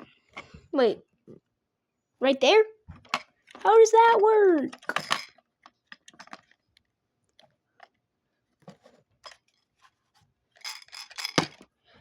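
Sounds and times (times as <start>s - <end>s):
rustling of pieces: 8.6s - 11.8s.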